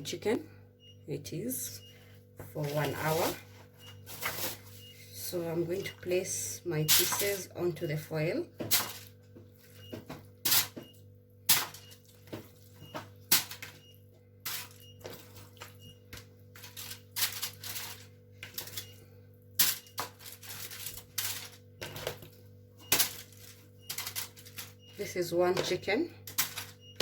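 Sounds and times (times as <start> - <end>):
foil crinkling: 19.8 - 21.6.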